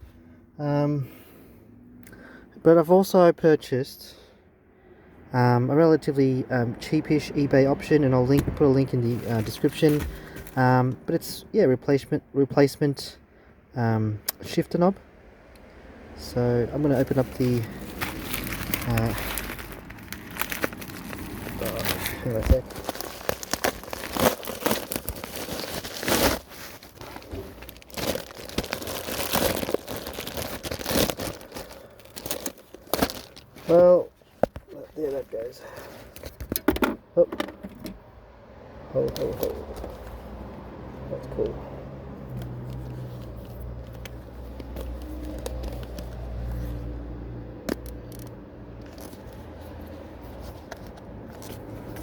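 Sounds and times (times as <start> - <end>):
packaging tearing and crinkling: 17.0 - 33.8, 44.0 - 46.4.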